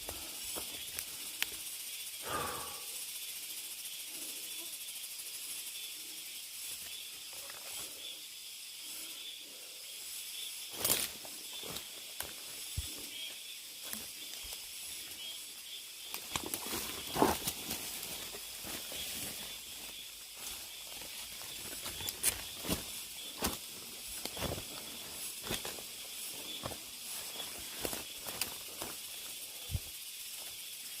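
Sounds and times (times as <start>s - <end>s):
cicadas singing: 0.0s - 31.0s.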